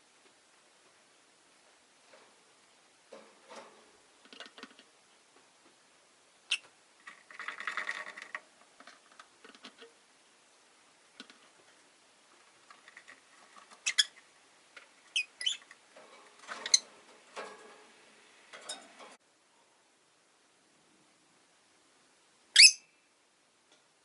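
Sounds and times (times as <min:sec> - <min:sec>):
birds scratching and rustling: 0:01.6 - 0:05.8, 0:06.5 - 0:10.0, 0:11.0 - 0:19.2
lovebirds chirping: 0:13.8 - 0:14.2, 0:15.1 - 0:15.7, 0:22.6 - 0:22.9.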